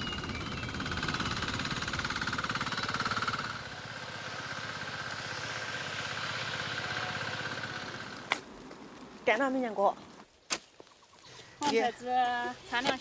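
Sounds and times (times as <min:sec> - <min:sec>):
engine knocking beat: 0:00.0 - 0:08.2.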